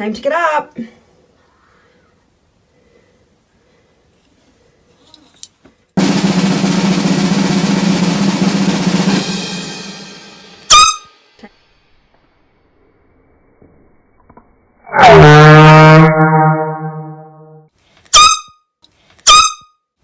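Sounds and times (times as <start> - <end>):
snare drum roll: 6.0 - 11.0
sharp high-pitched blast: 10.7 - 11.2.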